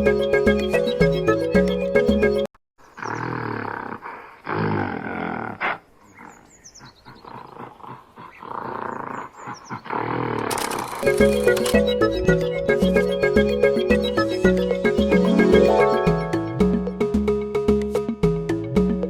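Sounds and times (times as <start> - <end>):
background music: 0.0 - 2.5, 10.6 - 19.0
wild animal roaring: 3.0 - 6.6, 7.2 - 10.9.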